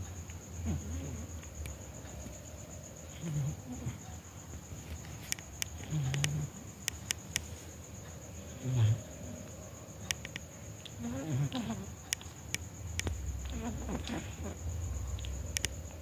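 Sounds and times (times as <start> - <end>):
cat snoring: 0.6 - 1.3, 5.8 - 6.6, 8.5 - 9.1, 11.0 - 11.9, 13.4 - 14.6
sharp clicks: 5.0 - 7.5, 10.0 - 11.0, 15.1 - 15.9.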